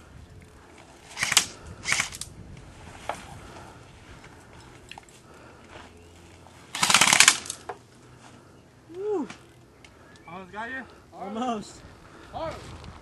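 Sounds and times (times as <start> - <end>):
airsoft guns firing: 1.1 - 2.2, 6.7 - 7.7.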